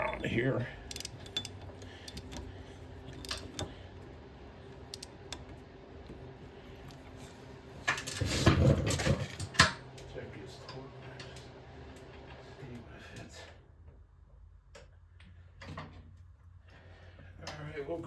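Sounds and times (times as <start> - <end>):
metallic clanking: 0.0 - 5.6
wrench clicking on nuts: 0.8 - 3.8, 4.7 - 5.5.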